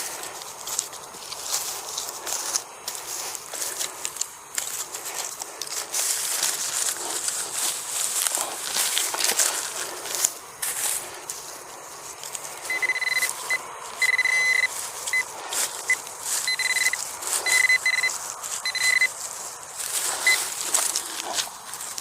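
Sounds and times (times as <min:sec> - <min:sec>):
coil scraping in stubble: 0:00.0 - 0:22.0
metal detector beeping: 0:12.6 - 0:19.2, 0:20.0 - 0:20.6.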